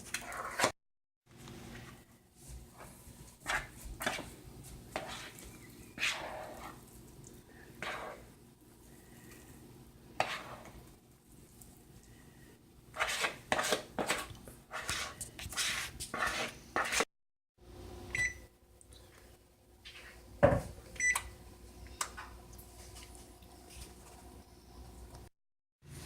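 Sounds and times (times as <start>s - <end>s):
spoon scraping batter from bowl: 4.9s - 6.9s, 7.8s - 8.3s, 10.2s - 10.8s, 12.9s - 17.1s.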